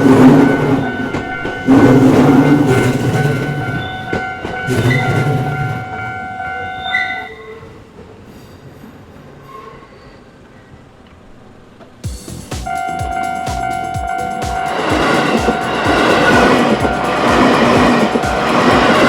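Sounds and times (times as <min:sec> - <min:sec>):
level crossing warning tones: 0:00.0 - 0:07.7, 0:12.6 - 0:19.0
train wheels clicking on rail joints: 0:00.0 - 0:19.0
train horn blasts: 0:12.7 - 0:19.0.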